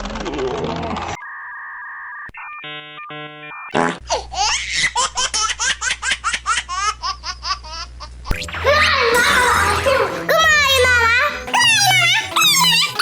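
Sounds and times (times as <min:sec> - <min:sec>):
rapid high-pitched laughter: 0:11.5 - 0:13.0.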